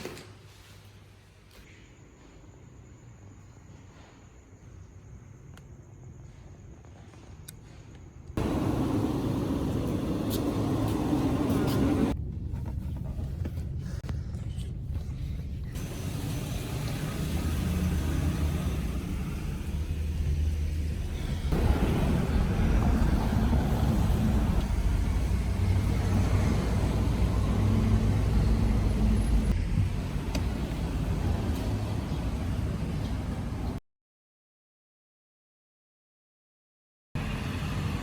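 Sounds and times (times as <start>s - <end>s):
moving road vehicle rumble: 8.4s - 33.8s.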